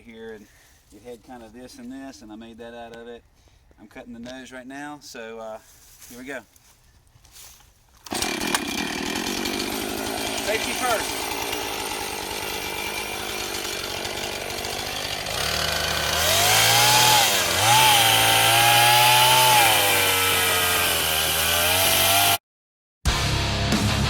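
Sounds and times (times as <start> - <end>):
chainsaw cutting wood: 8.0 - 22.4.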